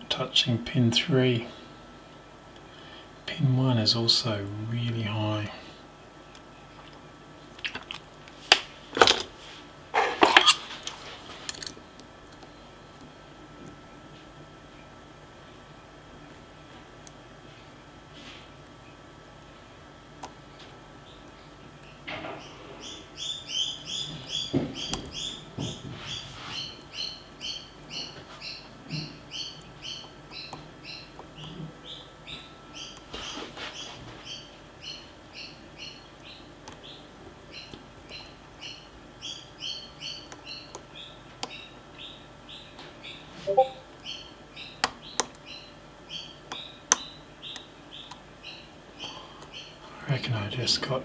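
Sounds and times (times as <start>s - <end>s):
lock picks clicking and scraping: 10.2s - 11.8s
bird chirping rapidly: 43.5s - 43.9s.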